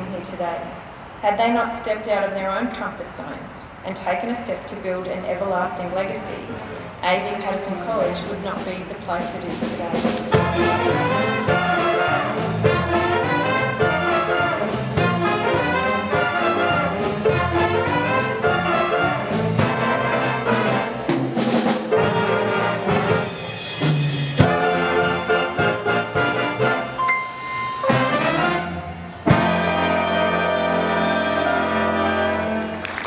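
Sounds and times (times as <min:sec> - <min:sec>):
jazz big band with brass: 0:07.0 - 0:33.0.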